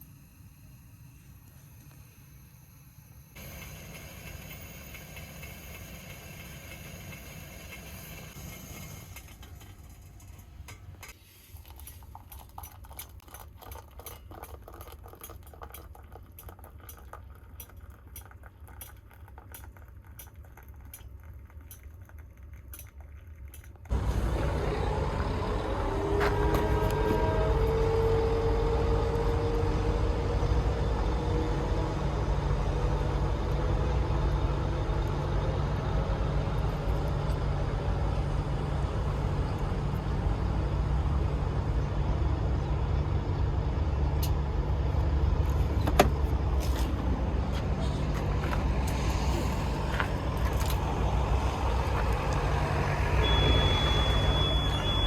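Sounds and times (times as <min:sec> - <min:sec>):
diesel truck engine humming: 0:23.9 - 0:55.0.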